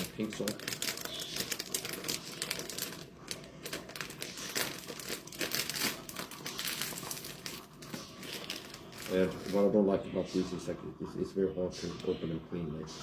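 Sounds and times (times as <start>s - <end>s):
salt packet crinkling: 0.0s - 9.7s.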